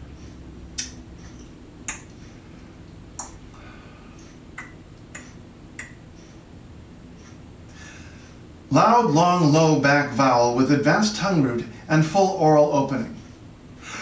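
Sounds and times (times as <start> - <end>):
man clucking his tongue: 1.9 - 2.2.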